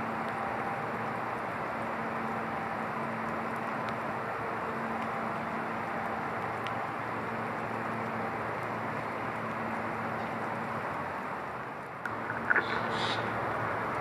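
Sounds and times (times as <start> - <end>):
rushing background noise: 0.0 - 14.0
harsh bird call: 12.4 - 13.4.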